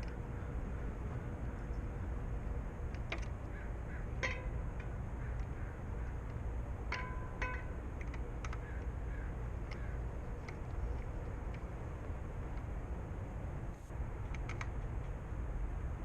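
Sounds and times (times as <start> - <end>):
steady low rumble: 0.0 - 16.0
light clicks and ticks: 4.2 - 12.8, 14.2 - 15.2.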